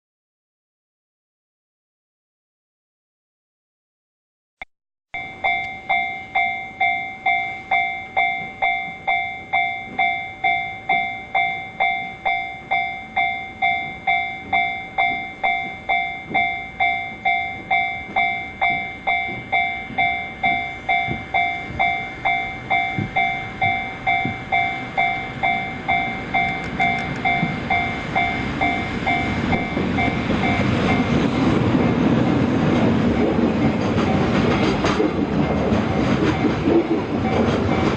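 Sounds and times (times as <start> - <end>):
level crossing bell ringing: 5.1 - 31.3
freight train rumble: 5.2 - 37.9.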